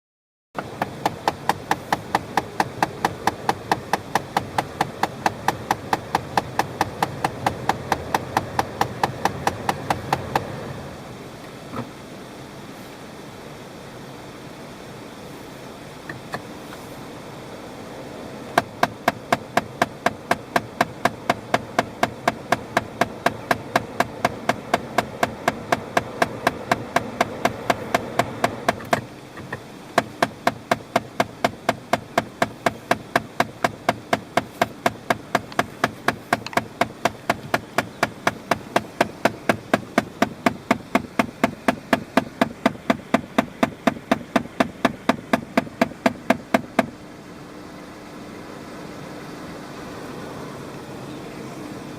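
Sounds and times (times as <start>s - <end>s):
mechanical ticking: 0.6s - 10.5s, 18.5s - 47.0s
low running hum: 0.6s - 51.9s.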